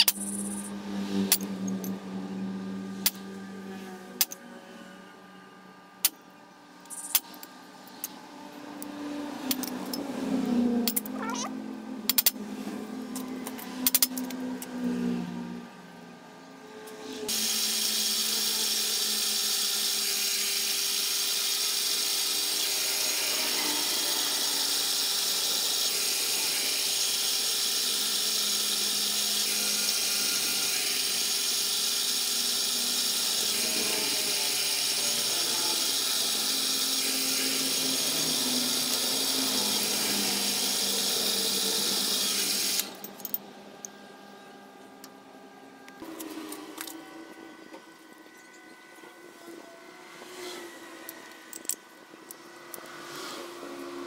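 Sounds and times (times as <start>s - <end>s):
electric power tool running: 16.6s - 43.4s.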